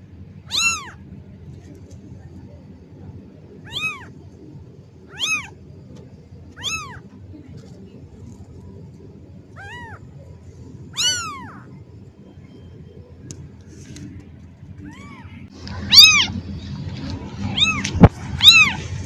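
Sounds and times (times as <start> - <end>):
kitten meowing: 0.5 - 1.0, 3.6 - 4.1, 5.1 - 5.6, 6.6 - 7.0, 9.6 - 10.0, 11.0 - 11.7, 14.8 - 16.3, 17.5 - 18.8.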